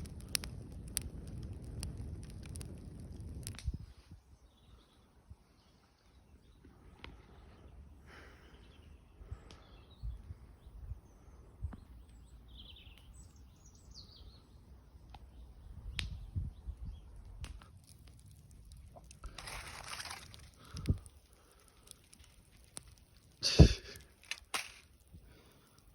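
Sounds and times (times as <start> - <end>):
birds chirping: 4.3 - 17.3.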